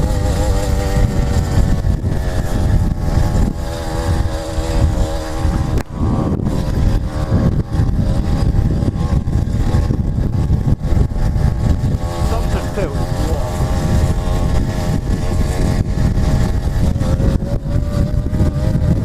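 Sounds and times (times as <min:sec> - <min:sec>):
motorized bicycle engine running: 0:00.0 - 0:19.0
wind rumble on microphone: 0:00.0 - 0:19.0.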